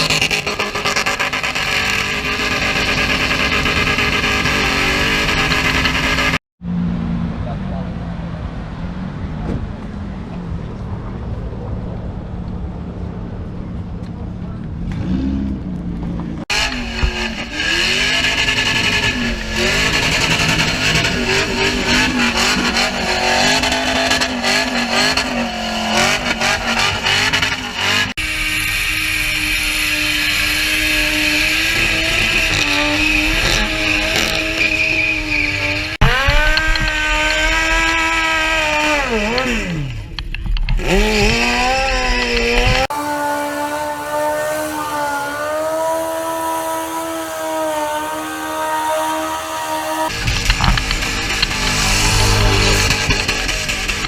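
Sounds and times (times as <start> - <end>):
car engine revving hard: 0.0 - 6.4, 16.4 - 54.0
tyres squealing: 30.2 - 54.0.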